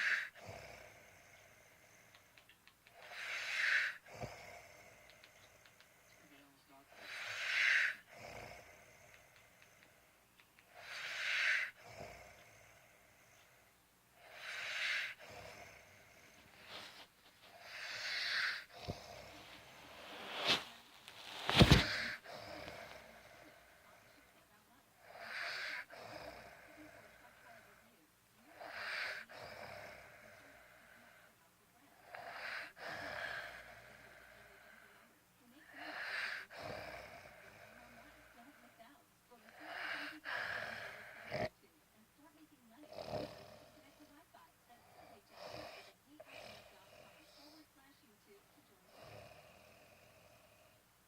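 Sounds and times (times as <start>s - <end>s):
rattling snort: 0.0s - 2.3s, 6.9s - 10.0s, 14.2s - 24.2s, 35.9s - 38.3s
person snoring: 0.0s - 24.4s, 28.5s - 31.3s, 32.0s - 35.1s, 35.8s - 38.5s, 39.5s - 41.5s, 42.9s - 43.8s
breathy breath: 0.0s - 27.9s, 35.7s - 38.9s.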